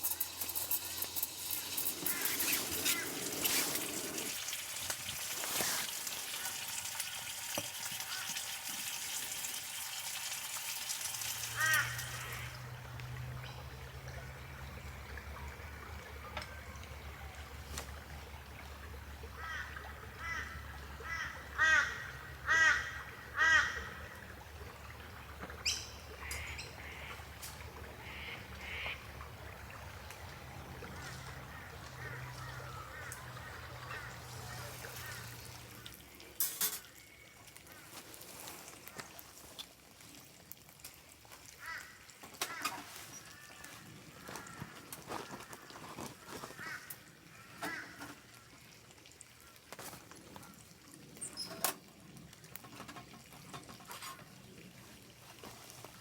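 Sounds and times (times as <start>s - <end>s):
steady hissing noise: 0.0s - 6.2s.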